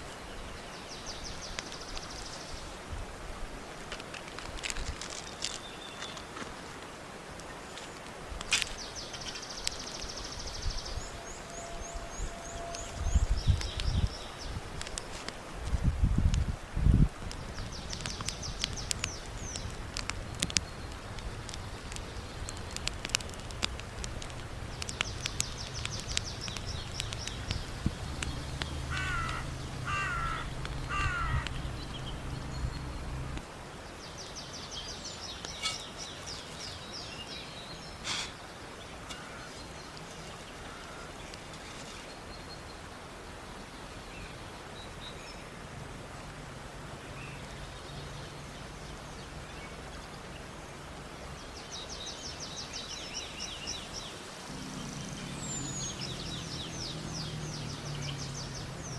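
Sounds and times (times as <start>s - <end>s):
sharp clicks: 17.2s - 31.7s
sharp crack: 17.2s - 31.7s, 38.0s - 38.4s
low rumble: 21.0s - 33.4s, 54.5s - 58.9s
birds trilling: 24.6s - 33.4s, 35.4s - 36.1s, 54.5s - 58.9s
short bird calls: 28.3s - 33.2s, 35.6s - 36.0s.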